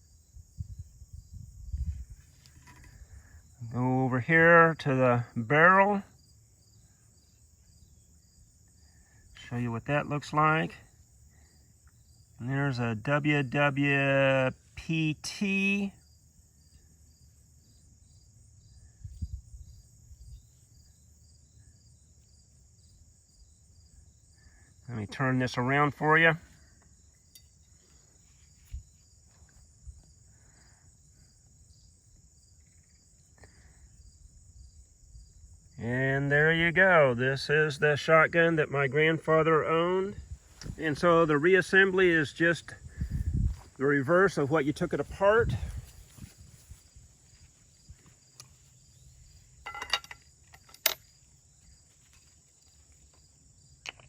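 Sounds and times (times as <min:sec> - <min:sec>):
crickets chirping: 0:00.0 - 0:54.0
shotgun metal parts clicking: 0:49.6 - 0:51.1.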